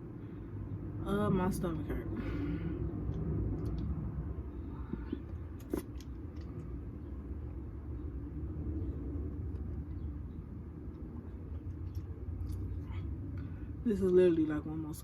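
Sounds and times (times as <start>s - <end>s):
low background rumble: 0.0s - 15.0s.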